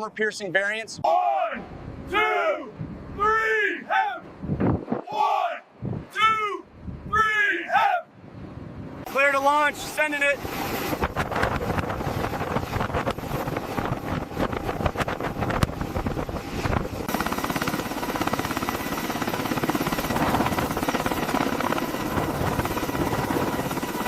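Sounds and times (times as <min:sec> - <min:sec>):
helicopter rotor beat: 0:09.0 - 0:24.0.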